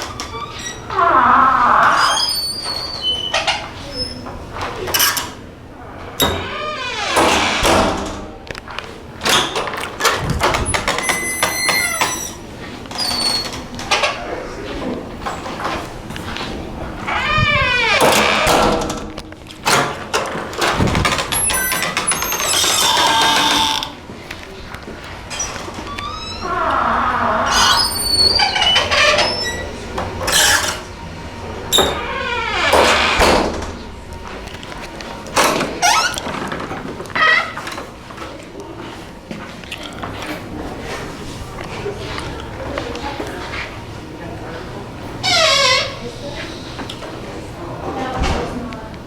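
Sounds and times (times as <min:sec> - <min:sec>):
door squeak: 0:00.0 - 0:04.3, 0:06.2 - 0:08.2, 0:09.3 - 0:14.2, 0:17.0 - 0:19.0, 0:20.8 - 0:24.0, 0:25.3 - 0:31.0, 0:31.7 - 0:33.8, 0:35.4 - 0:36.5, 0:37.2 - 0:37.7, 0:45.2 - 0:46.7
door creaking: 0:00.0 - 0:05.4, 0:06.1 - 0:08.4, 0:09.2 - 0:14.4, 0:15.2 - 0:24.1, 0:24.8 - 0:38.0, 0:45.2 - 0:47.1.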